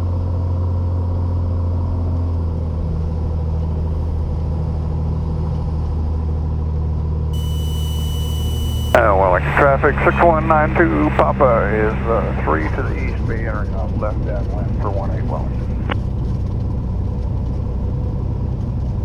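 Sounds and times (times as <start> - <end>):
radio hiss: 7.4 - 16.0
plane engine and propeller droning: 7.4 - 19.0.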